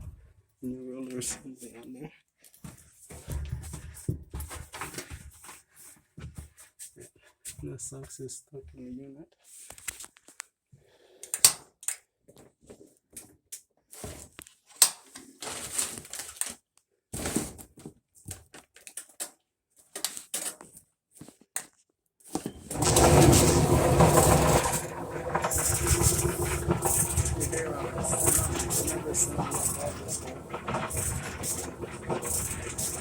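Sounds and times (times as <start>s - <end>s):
dryer drum rumbling and grinding: 22.6s - 33.0s.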